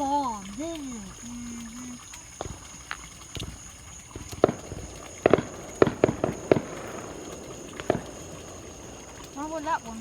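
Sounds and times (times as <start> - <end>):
fireworks bangs and cracks: 2.4 - 10.0.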